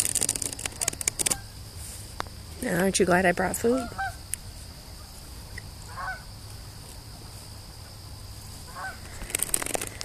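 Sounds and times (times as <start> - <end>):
crackling clicks: 0.0 - 1.4, 9.0 - 10.0
geese honking: 3.6 - 4.2, 5.8 - 6.3, 8.7 - 9.2.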